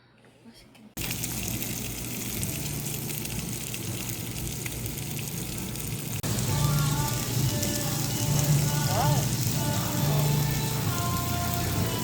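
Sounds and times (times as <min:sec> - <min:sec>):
food sizzling in a pan: 0:01.0 - 0:12.0
light background music: 0:06.2 - 0:12.0.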